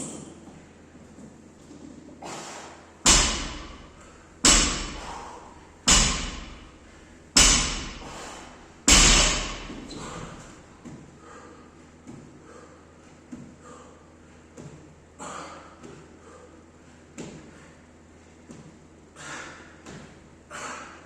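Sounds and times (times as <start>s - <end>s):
barbell dropped on gym floor: 3.0s - 6.8s, 7.4s - 10.5s.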